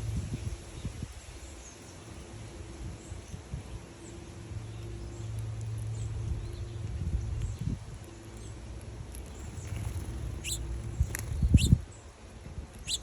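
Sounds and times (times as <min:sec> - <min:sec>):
small birds chirping: 0:00.0 - 0:13.0
steady low hum: 0:04.1 - 0:13.0.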